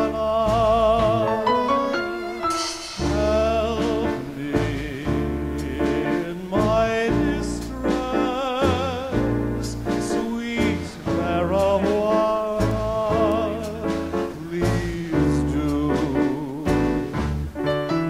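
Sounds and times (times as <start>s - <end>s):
dance orchestra playing latin tune: 1.1s - 6.1s.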